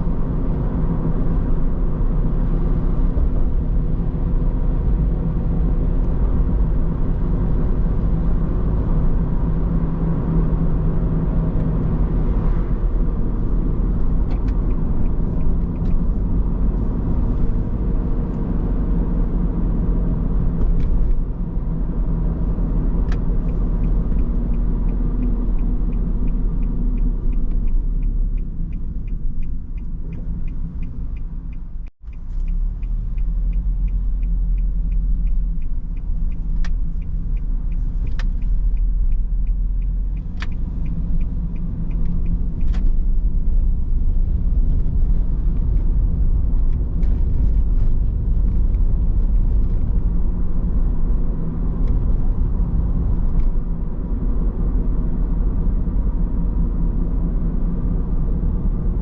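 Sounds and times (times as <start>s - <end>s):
road and engine rumble: 0.0s - 59.0s
fast regular ticking: 23.4s - 45.2s.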